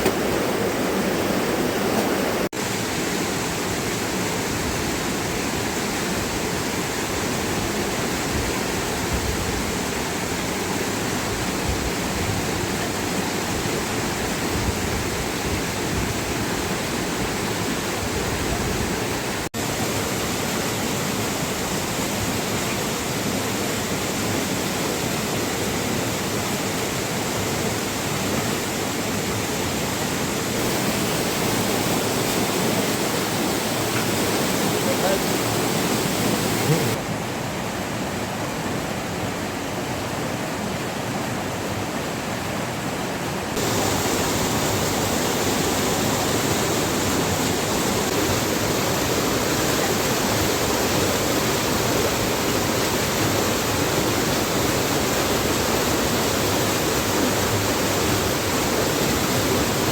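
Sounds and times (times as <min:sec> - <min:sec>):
heavy rain: 0:00.0 - 0:40.4, 0:42.6 - 0:59.9
river water rushing: 0:00.0 - 0:59.9.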